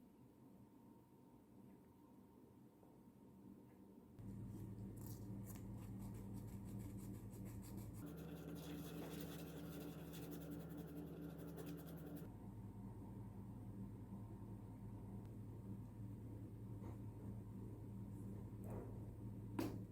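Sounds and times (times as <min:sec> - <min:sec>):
steady low hum: 0:04.1 - 0:19.9
sandpaper scratching and sanding: 0:06.0 - 0:12.2.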